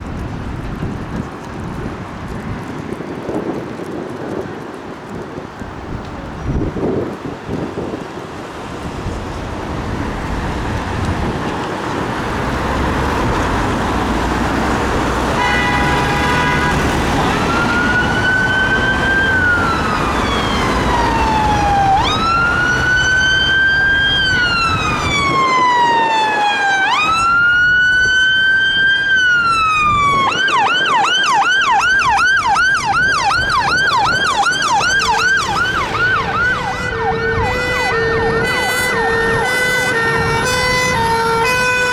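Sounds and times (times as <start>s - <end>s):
fire engine engine and road noise: 0.0s - 41.9s
siren wail and yelp: 16.4s - 41.9s.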